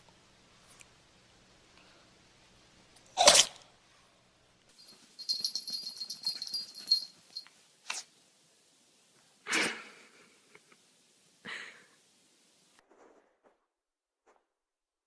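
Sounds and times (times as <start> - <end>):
puppy sneezing: 7.8 - 8.1.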